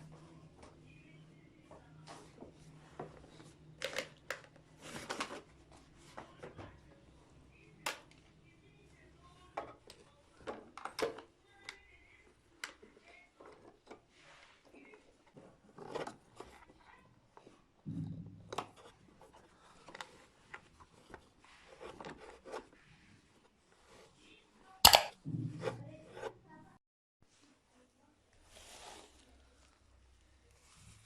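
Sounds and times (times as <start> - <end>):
sharp loud click: 24.9 - 25.1.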